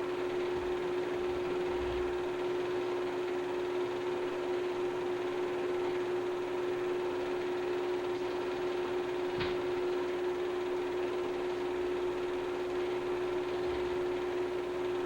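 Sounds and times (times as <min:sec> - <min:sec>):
steady hum with held tone: 0:00.0 - 0:15.0.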